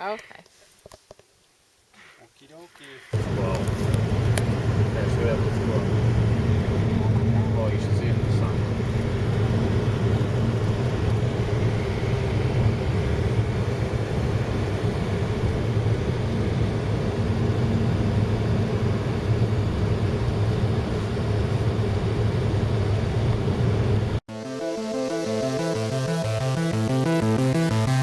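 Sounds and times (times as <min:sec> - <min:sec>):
road noise: 0:03.1 - 0:24.2
car engine drone: 0:03.2 - 0:28.0.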